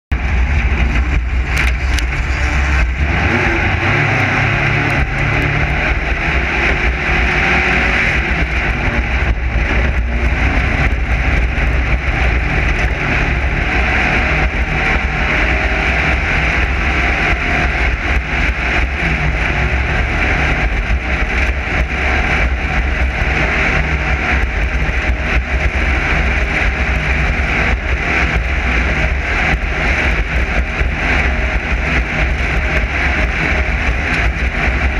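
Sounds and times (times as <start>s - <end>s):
loud rushing noise: 0.1s - 34.9s
race car engine running: 0.1s - 34.9s.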